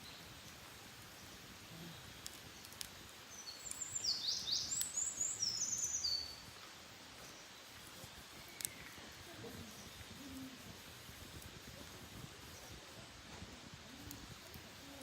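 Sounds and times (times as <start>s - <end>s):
songbird singing: 0.0s - 13.1s
faint sharp clicks: 2.2s - 4.0s, 4.7s - 5.2s, 7.8s - 9.0s, 14.0s - 15.0s.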